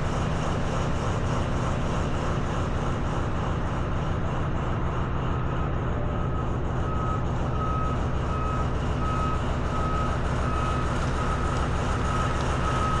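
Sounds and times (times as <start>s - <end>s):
diesel engine rumbling: 0.0s - 13.0s
reversing alarm beeping: 6.2s - 13.0s.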